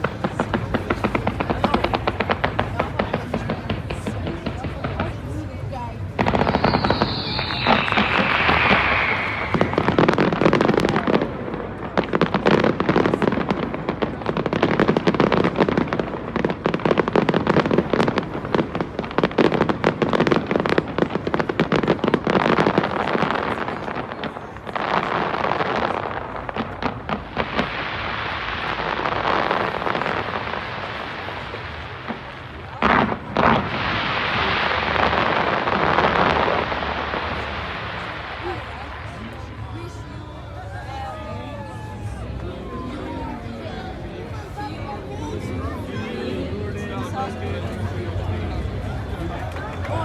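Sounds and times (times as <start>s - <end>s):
fireworks bangs and crackling: 0.0s - 50.0s
whistling rocket falling in pitch: 6.2s - 10.8s.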